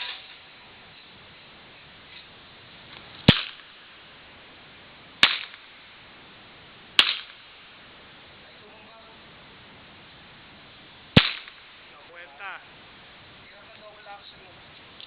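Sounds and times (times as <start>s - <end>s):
revolver shots echoing: 3.2s - 3.9s, 5.2s - 5.8s, 7.0s - 7.5s, 11.2s - 11.8s.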